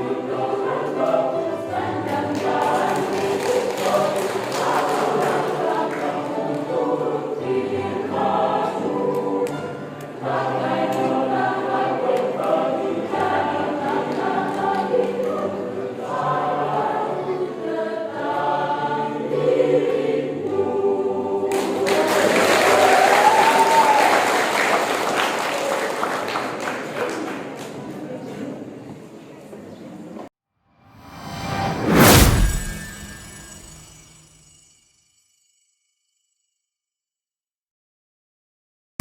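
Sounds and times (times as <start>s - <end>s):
choir singing a hymn: 0.0s - 24.8s
applause: 2.3s - 6.2s, 21.5s - 27.9s.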